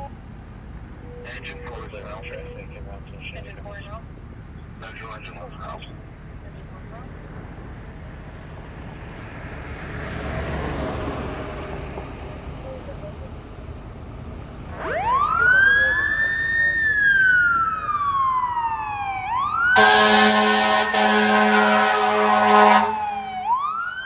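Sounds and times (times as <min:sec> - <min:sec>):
emergency vehicle siren wailing: 0:00.0 - 0:04.8, 0:10.1 - 0:24.0
low vehicle rumble: 0:00.0 - 0:24.0.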